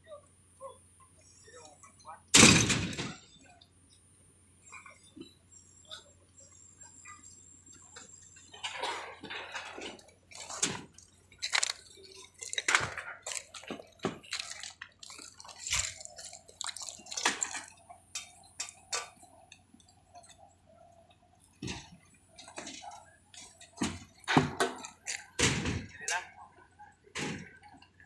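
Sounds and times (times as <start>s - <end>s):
wet concrete sloshing and splattering: 11.4s - 17.7s.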